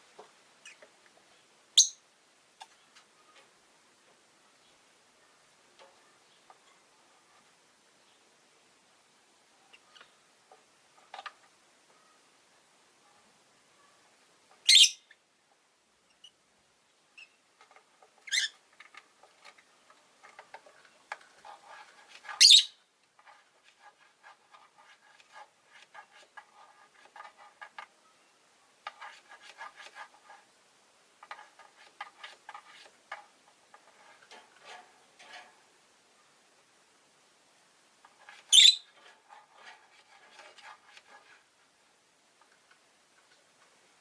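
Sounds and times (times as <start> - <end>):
shrill bird calls: 14.7 - 15.2, 22.4 - 22.8, 38.5 - 38.9.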